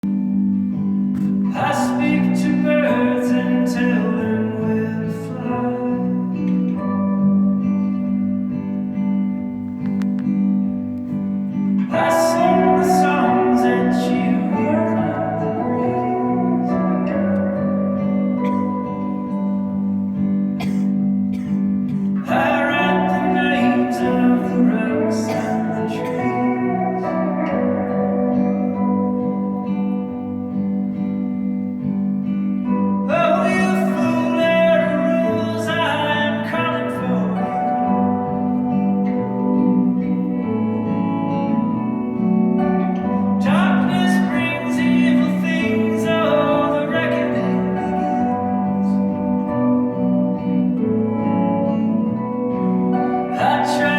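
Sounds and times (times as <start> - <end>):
guitar chords ringing: 0.0 - 53.9
indie folk band playing live: 0.0 - 53.9
sliding lead melody: 0.0 - 53.9
person singing: 1.2 - 7.8, 11.7 - 19.8, 22.0 - 31.0, 32.7 - 41.8, 42.8 - 53.9.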